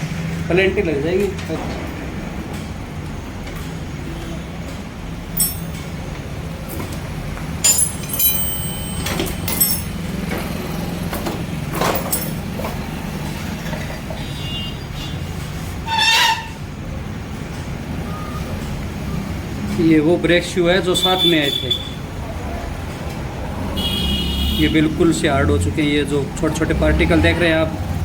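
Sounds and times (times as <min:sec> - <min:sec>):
metal tools clinking and knocking: 0:05.4 - 0:06.0, 0:07.6 - 0:12.9.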